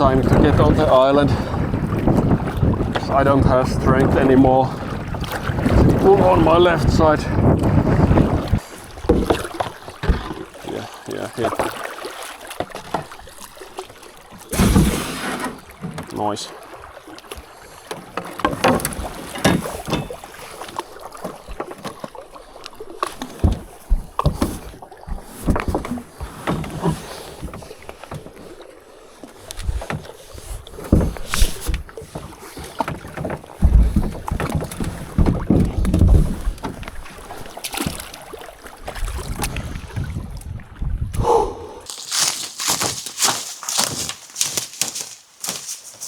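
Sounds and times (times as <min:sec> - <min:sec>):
wind buffeting microphone: 0:00.0 - 0:10.4, 0:33.6 - 0:37.1, 0:38.9 - 0:41.9
hull knocking and scraping: 0:00.0 - 0:10.6, 0:17.4 - 0:22.2, 0:23.0 - 0:28.4, 0:29.6 - 0:38.1
paddle splashes: 0:00.0 - 0:46.0.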